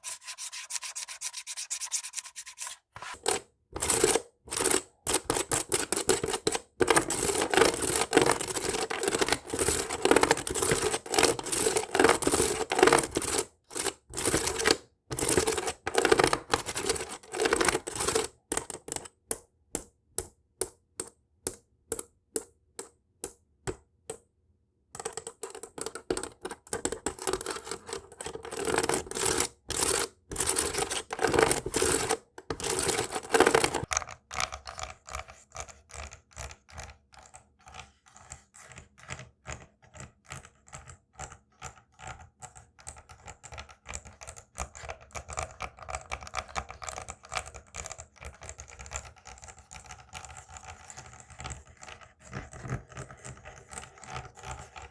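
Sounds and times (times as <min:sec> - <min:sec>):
fingernails scratching: 0:00.0 - 0:13.4, 0:25.7 - 0:33.9.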